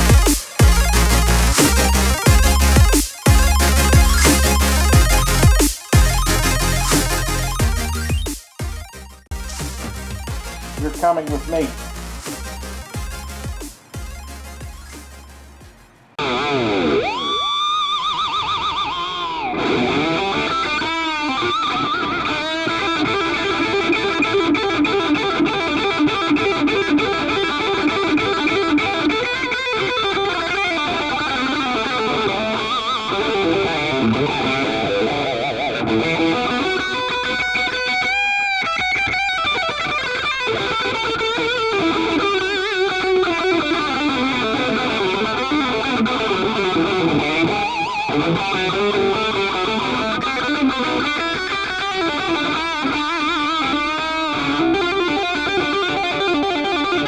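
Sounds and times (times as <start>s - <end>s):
dense backing music: 0.0s - 16.2s
distorted electric guitar: 0.0s - 57.0s.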